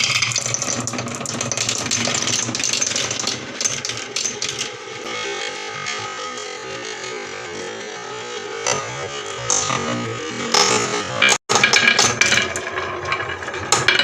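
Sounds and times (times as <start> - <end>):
marbles rolling down wooden run: 0.0 - 5.1, 10.6 - 14.0.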